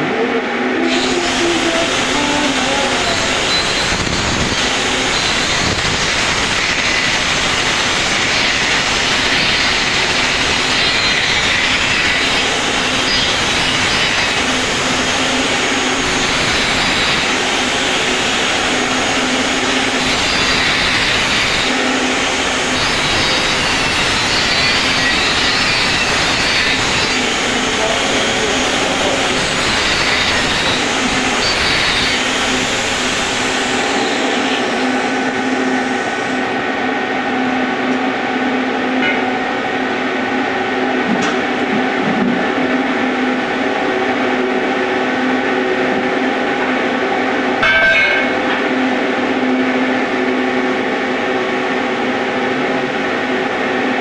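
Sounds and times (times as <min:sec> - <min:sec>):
arc welding hiss: 0:01.0 - 0:36.4.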